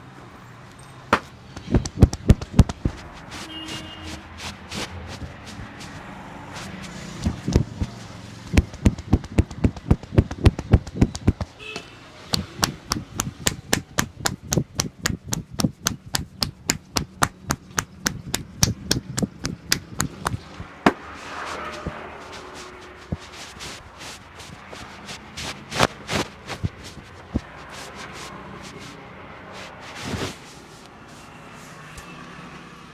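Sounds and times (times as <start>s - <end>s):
hands striking head in massage: 7.2s - 11.5s, 12.3s - 27.9s.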